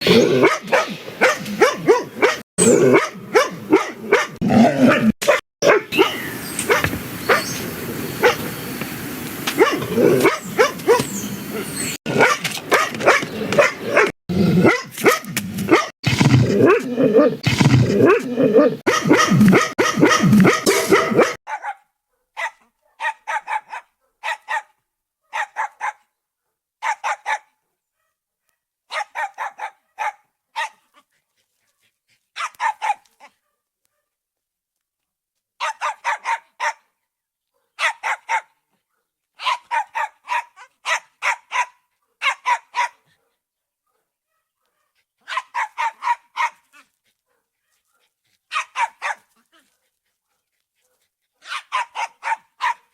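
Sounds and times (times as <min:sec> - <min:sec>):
dogs barking: 0:00.0 - 0:08.6, 0:09.5 - 0:24.7, 0:25.3 - 0:26.0, 0:26.8 - 0:27.5, 0:28.9 - 0:30.8, 0:32.4 - 0:33.1, 0:35.6 - 0:36.9, 0:37.6 - 0:38.6, 0:39.4 - 0:43.3, 0:43.9 - 0:46.7, 0:47.3 - 0:49.3, 0:51.4 - 0:52.9.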